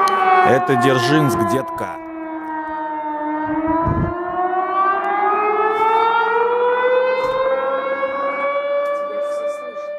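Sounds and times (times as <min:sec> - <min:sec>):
warning siren wailing: 0:00.0 - 0:09.9.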